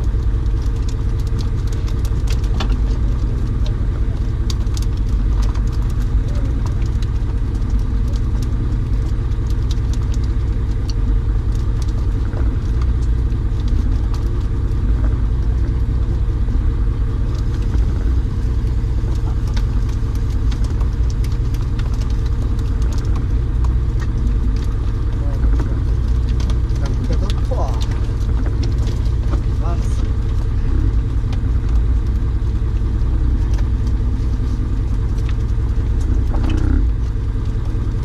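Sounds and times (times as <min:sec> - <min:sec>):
engine rumble: 0:00.0 - 0:38.0
faint ticks: 0:35.1 - 0:37.8.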